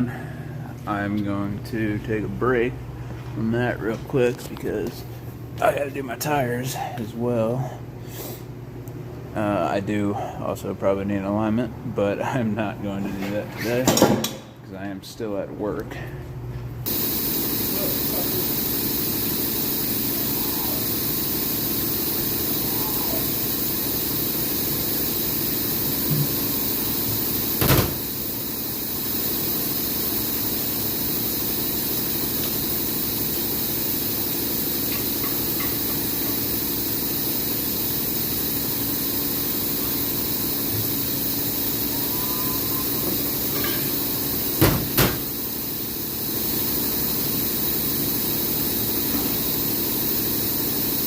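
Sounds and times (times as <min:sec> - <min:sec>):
workshop hiss: 0:00.0 - 0:08.7, 0:12.3 - 0:51.0.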